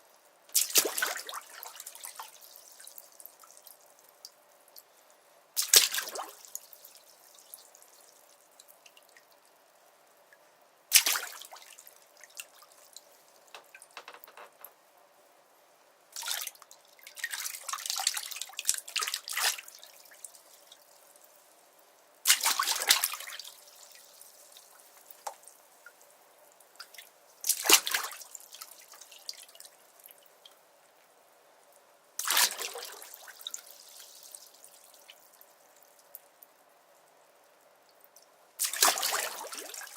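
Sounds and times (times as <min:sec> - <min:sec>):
water dripping: 0:00.0 - 0:05.0, 0:05.6 - 0:09.6, 0:10.2 - 0:14.7, 0:16.2 - 0:31.1, 0:32.2 - 0:39.9
water splashing in a bathtub: 0:00.5 - 0:04.3, 0:05.6 - 0:09.2, 0:10.9 - 0:14.4, 0:16.1 - 0:21.5, 0:22.2 - 0:30.5, 0:32.2 - 0:36.1, 0:38.6 - 0:39.9.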